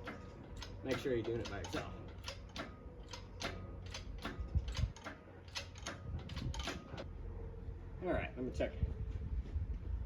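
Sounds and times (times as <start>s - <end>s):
sharp clicks: 0.0s - 7.0s
low steady rumble: 0.0s - 10.0s.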